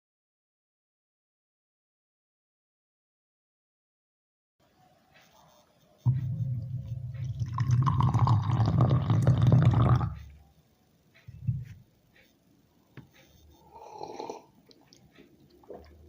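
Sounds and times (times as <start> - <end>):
person slurping coffee: 7.0 - 10.3, 13.6 - 16.0.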